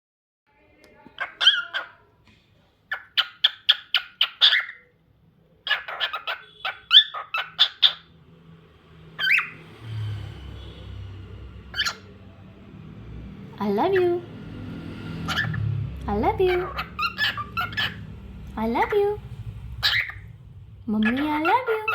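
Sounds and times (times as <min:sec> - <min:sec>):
cockatiel chirping: 0:01.2 - 0:02.0, 0:02.9 - 0:04.9, 0:05.6 - 0:08.1, 0:09.2 - 0:09.6, 0:11.7 - 0:12.1, 0:15.3 - 0:15.6, 0:16.5 - 0:18.1, 0:19.8 - 0:20.3, 0:21.0 - 0:21.9.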